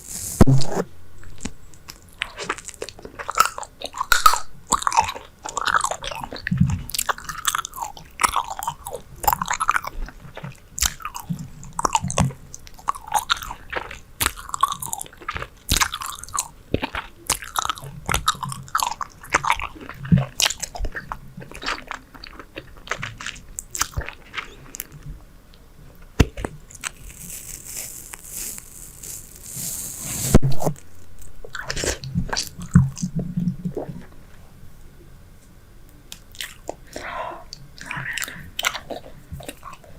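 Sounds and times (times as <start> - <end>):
airy hiss: 0.0 - 0.5, 27.6 - 30.4
bubble gum chewing smacks: 1.2 - 25.1.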